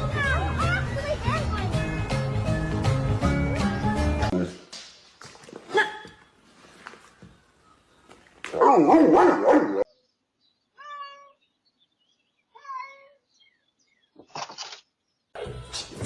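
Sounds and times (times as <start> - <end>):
cat meowing: 10.8 - 11.4, 12.5 - 13.2.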